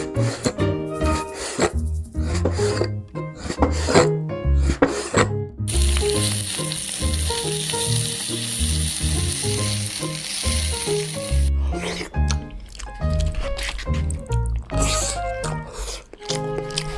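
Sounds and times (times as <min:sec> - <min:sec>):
steady hiss: 0:05.7 - 0:11.5.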